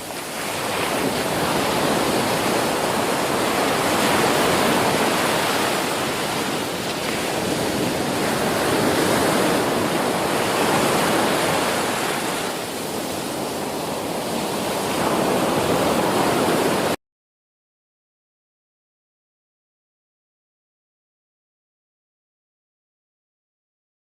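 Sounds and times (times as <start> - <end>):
rushing floodwater: 0.0 - 17.0.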